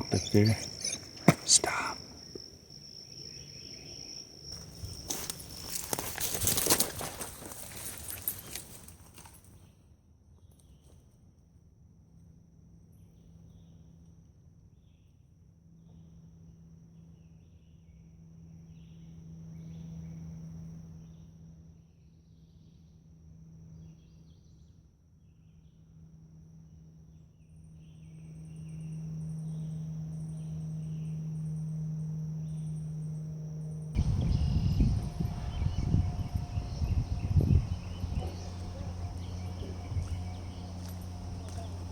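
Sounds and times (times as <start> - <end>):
chirping calls: 0.0 - 2.4, 34.0 - 41.9
high insect trill: 0.0 - 9.4, 25.9 - 41.9
low steady hum: 25.9 - 41.9.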